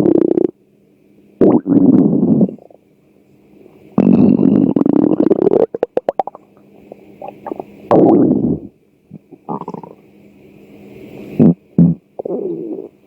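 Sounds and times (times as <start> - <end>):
stomach growling and gurgling: 1.4 - 2.8, 4.0 - 6.4, 7.0 - 10.0, 12.2 - 13.0.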